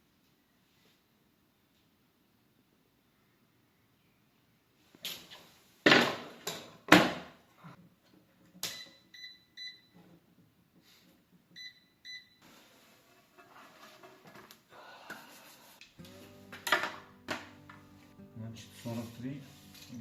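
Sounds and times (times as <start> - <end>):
faint rubbing and scraping: 12.4 - 15.8, 18.7 - 20.0.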